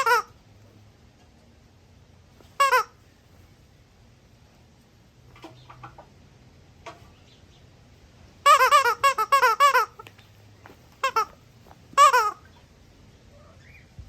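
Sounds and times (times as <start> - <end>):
squeaky toy squeaking: 0.0 - 0.3, 2.4 - 3.0, 8.4 - 10.1, 11.0 - 12.5.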